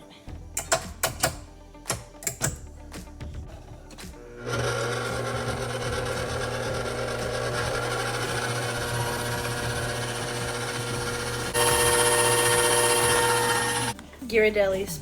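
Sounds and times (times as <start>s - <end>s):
stand mixer motor hum: 4.4s - 14.0s.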